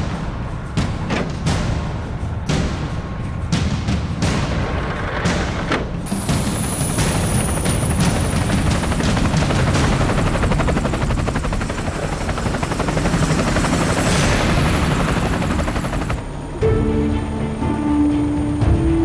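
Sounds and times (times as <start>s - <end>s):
music with held low tones: 0.0s - 19.0s
helicopter rotor chopping: 4.6s - 16.6s.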